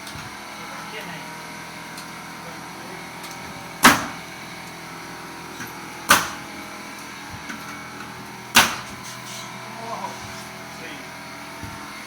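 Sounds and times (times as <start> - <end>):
nails driven into wood: 3.8 - 4.2, 6.1 - 6.4, 8.5 - 9.0.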